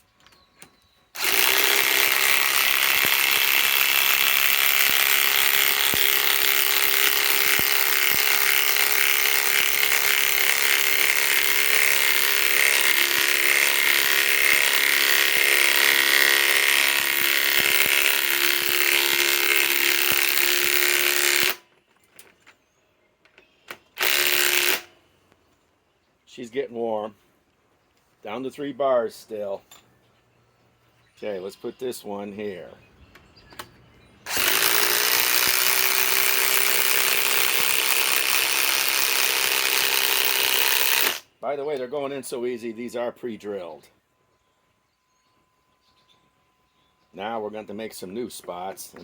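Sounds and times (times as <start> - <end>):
impact wrench hammering: 1.2 - 21.6, 24.0 - 24.9, 34.3 - 41.2.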